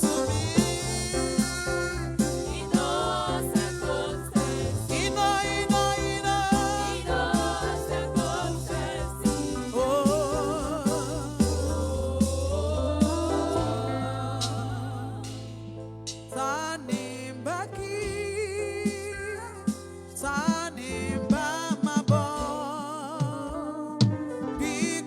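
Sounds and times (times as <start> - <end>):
steady beat: 0.0 - 15.6
held bass notes: 0.0 - 16.3
gospel song with vibrato vocals: 0.0 - 25.0.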